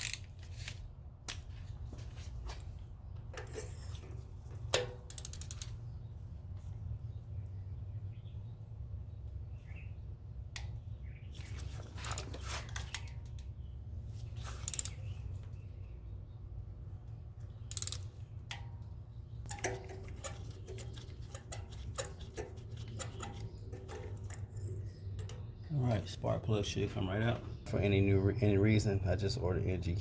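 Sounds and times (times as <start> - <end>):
ratchet wrench clicking: 0.0 - 0.3, 4.7 - 5.8, 14.6 - 15.2, 17.6 - 18.6.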